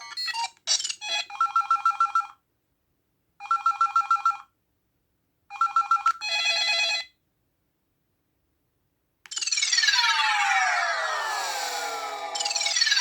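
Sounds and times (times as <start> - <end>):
electronic phone ringtone trill: 9.3 - 13.0
electronic tones: 9.4 - 13.0.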